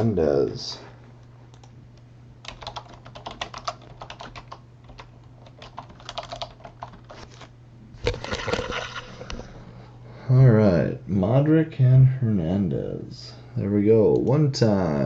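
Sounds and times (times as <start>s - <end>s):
faint low hum: 0.0s - 15.0s
keyboard typing clicks: 2.4s - 7.1s.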